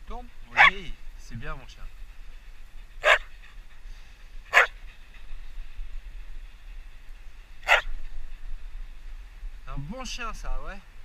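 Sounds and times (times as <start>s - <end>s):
dog barking: 0.5s - 0.8s, 3.0s - 3.3s, 4.5s - 4.8s, 7.6s - 7.9s.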